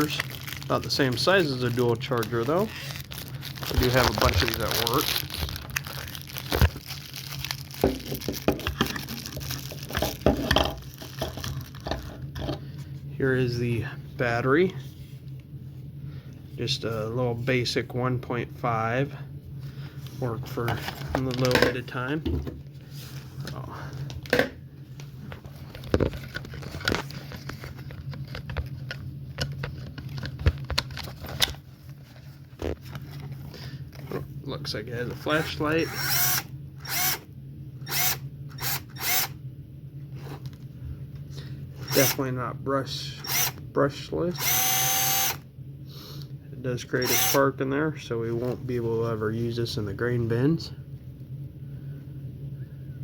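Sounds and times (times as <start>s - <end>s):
packaging crinkling: 0.0s - 12.2s
steady low hum: 0.0s - 53.0s.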